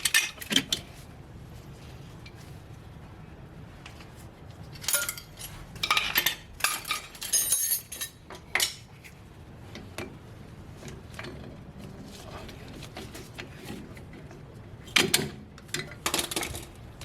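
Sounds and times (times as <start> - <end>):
metal tools clinking and rattling: 4.8 - 8.9.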